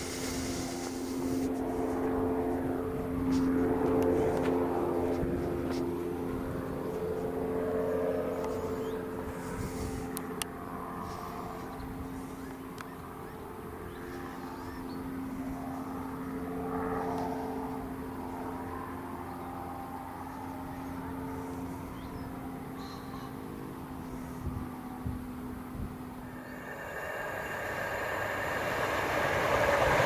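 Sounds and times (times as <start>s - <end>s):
vehicle engine droning: 26.2s - 30.0s.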